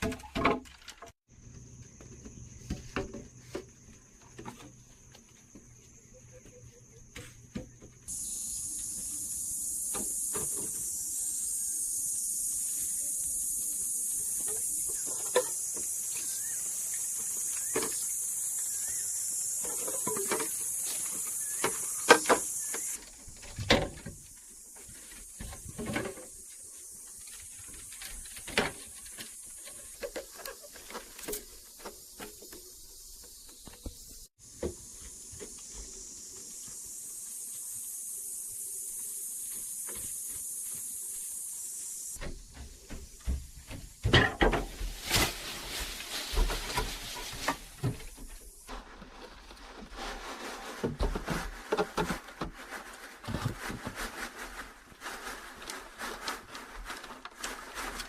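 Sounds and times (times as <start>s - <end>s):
steady high hiss: 8.0s - 48.9s
knocks and scrapes of hand tools: 19.6s - 24.2s, 42.2s - 45.2s.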